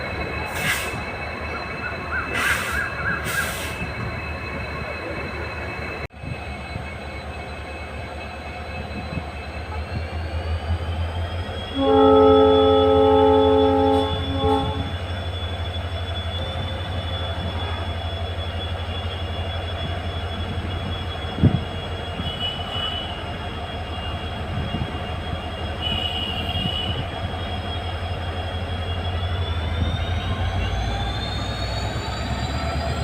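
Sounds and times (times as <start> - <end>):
locomotive engine pulsing hum: 0.0 - 33.0
train horn chord: 11.7 - 15.0.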